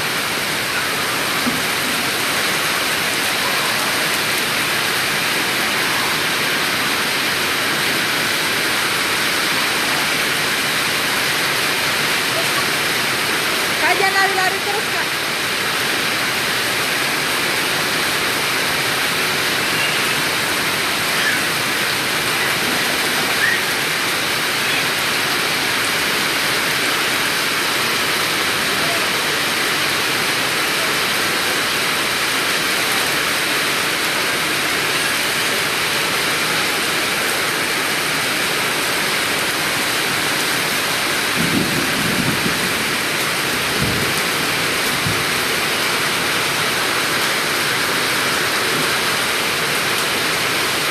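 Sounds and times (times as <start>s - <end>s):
heavy rain falling: 0.0s - 50.9s.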